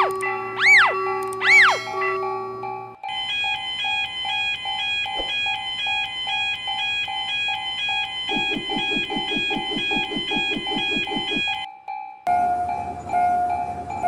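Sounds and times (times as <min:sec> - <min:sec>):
railway crossing warning bell: 0:00.0 - 0:09.0, 0:11.6 - 0:14.0.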